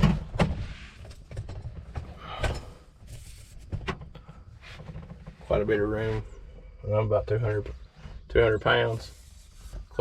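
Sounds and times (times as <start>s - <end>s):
knocks and bumps in excavator cab: 0.0s - 2.8s.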